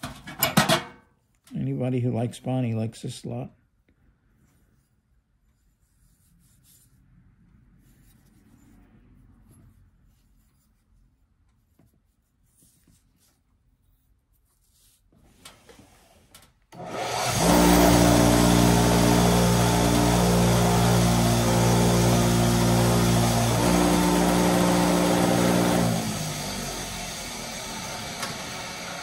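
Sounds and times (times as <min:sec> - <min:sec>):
motor humming: 0:16.8 - 0:29.0.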